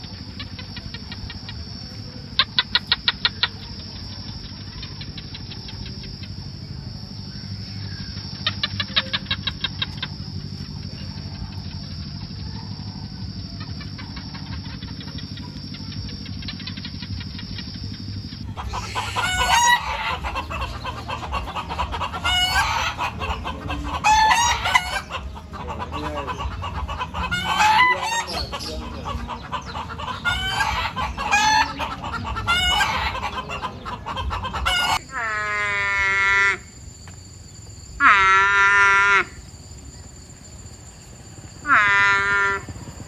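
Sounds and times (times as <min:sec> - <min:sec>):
animal long calls: 0:00.0 - 0:37.0, 0:37.9 - 0:39.6, 0:41.0 - 0:43.0
chickens clucking: 0:00.0 - 0:43.0
rooster crowing: 0:18.5 - 0:36.6.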